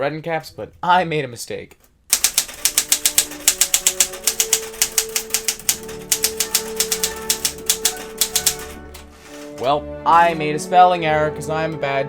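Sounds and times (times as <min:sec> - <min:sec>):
manual typewriter typing: 0:02.1 - 0:09.6
background music: 0:02.1 - 0:12.0.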